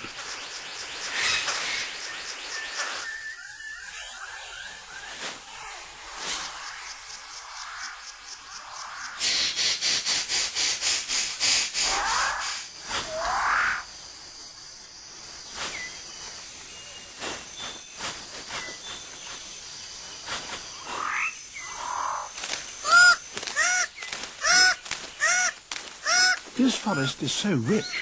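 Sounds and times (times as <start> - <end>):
high insect trilling: 11.0 - 16.6, 18.5 - 28.0
scattered animal calls: 20.7 - 28.0.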